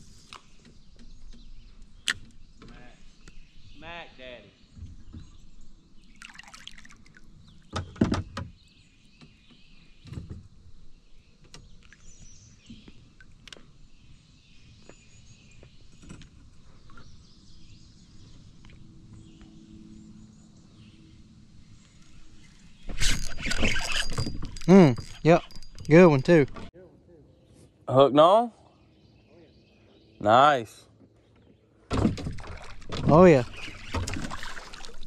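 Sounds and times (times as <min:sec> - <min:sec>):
birds chirping faintly: 0:00.0 - 0:31.9
knocks and thumps against kayak: 0:07.6 - 0:08.6, 0:31.9 - 0:34.9.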